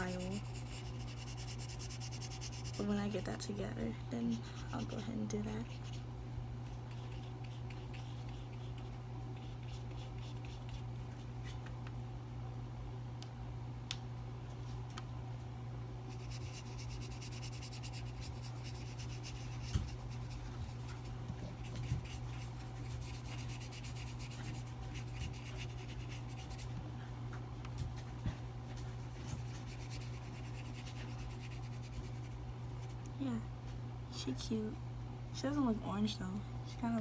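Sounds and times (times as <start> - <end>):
paintbrush rubbing on paper: 0.0 - 3.5, 4.3 - 6.1, 6.9 - 10.9, 16.1 - 26.7, 28.8 - 33.0
steady low hum: 0.0 - 37.0.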